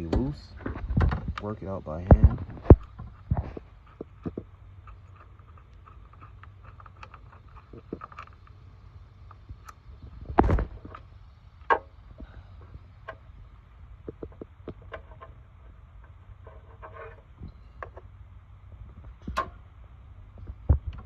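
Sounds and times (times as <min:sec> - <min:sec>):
steady low hum: 0:00.0 - 0:21.0
small clicks and taps of parts: 0:02.7 - 0:08.6.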